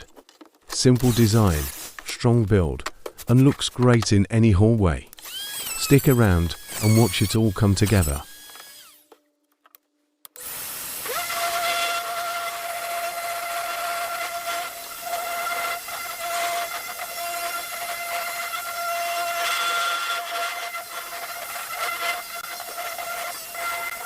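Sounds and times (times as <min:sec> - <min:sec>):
power tool motor whining: 0:01.0 - 0:02.0, 0:05.2 - 0:09.2, 0:10.4 - 0:24.0.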